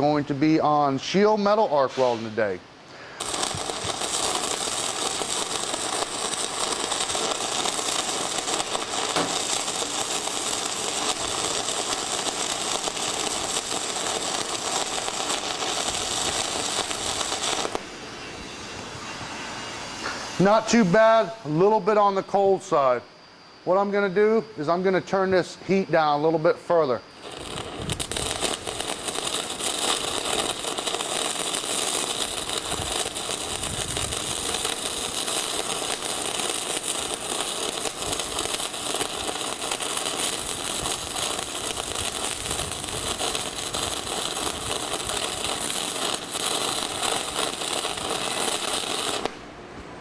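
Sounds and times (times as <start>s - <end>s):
welding arc crackling: 2.2s - 17.9s, 27.1s - 49.5s.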